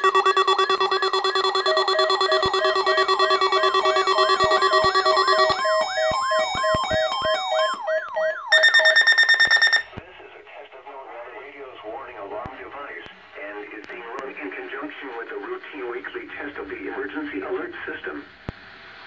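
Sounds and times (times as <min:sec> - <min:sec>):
siren-like sweeping tone: 0:00.0 - 0:09.8
pulsing high tone: 0:00.0 - 0:09.9
pulsing low beep: 0:00.0 - 0:09.9
steady alert tone: 0:00.0 - 0:09.9.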